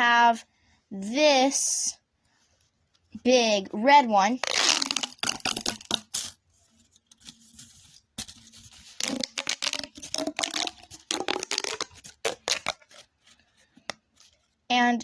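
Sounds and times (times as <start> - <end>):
plastic pop tube crackling clicks: 4.4 - 6.3, 9.0 - 12.9.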